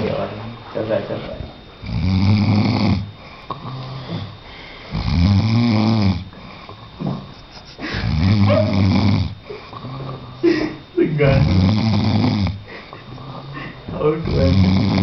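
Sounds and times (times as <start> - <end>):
man snoring: 1.8 - 15.0
quiet breathing: 3.1 - 5.1, 6.2 - 8.7, 9.3 - 11.0, 11.9 - 15.0.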